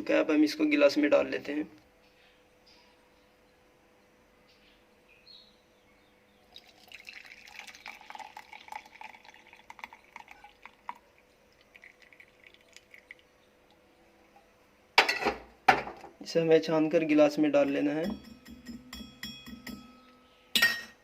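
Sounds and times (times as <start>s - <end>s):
liquid trickling into glass: 6.5s - 13.8s
liquid dripping: 6.5s - 13.9s.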